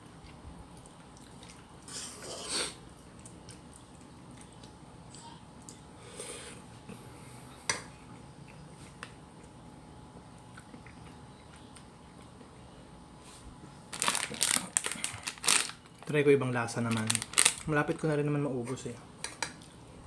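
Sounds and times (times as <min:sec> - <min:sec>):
quiet eating: 0:00.0 - 0:20.0
plastic food wrapper crinkling: 0:13.9 - 0:18.2.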